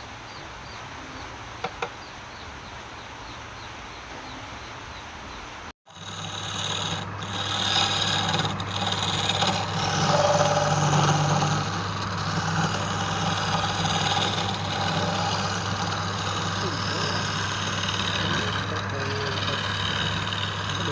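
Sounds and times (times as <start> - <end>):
cutting tool rasping on wood: 5.9 - 20.9
lathe motor hum: 5.9 - 20.9.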